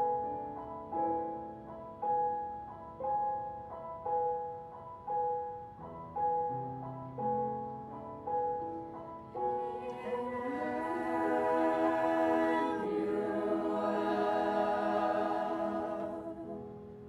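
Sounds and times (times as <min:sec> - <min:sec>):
slow piano notes: 0:00.0 - 0:17.0
choir voices: 0:09.4 - 0:16.8.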